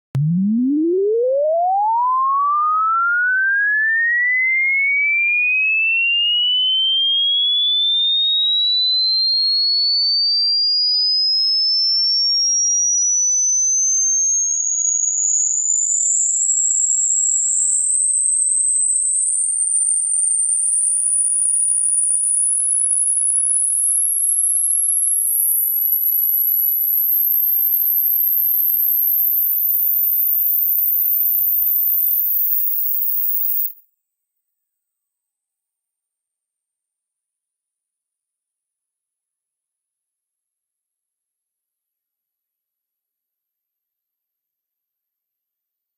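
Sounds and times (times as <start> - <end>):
pure tone sweeping upward: 0.2 - 4.0, 32.2 - 33.8
high pure test tone: 24.6 - 33.8.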